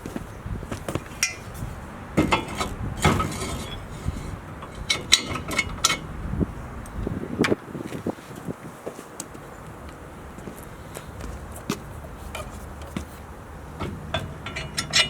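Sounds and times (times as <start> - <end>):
metal parts clanking: 2.2 - 6.1, 13.7 - 15.0.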